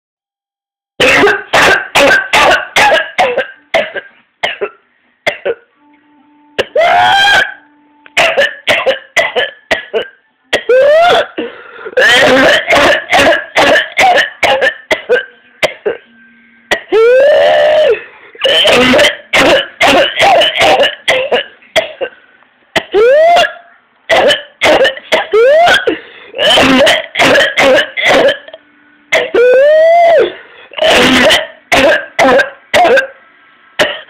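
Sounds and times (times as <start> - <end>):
person coughing: 1.0 - 5.6, 8.2 - 16.0, 16.7 - 22.2, 22.8 - 29.4, 30.7 - 33.1, 33.8 - 34.0
high-pitched whooping in-breath: 29.4 - 30.8.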